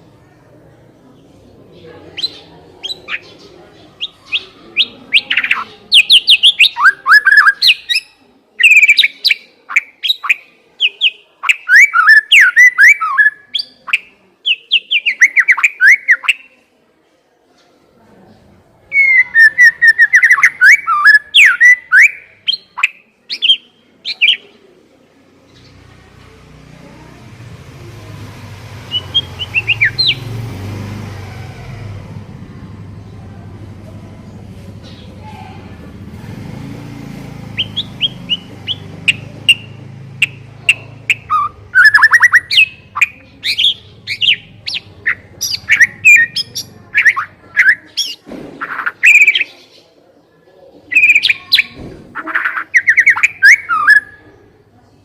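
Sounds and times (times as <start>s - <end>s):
bird singing whistled phrases: 4.0s - 16.5s, 18.9s - 24.4s, 28.9s - 30.2s, 37.6s - 48.2s, 48.8s - 49.5s, 52.4s - 54.2s.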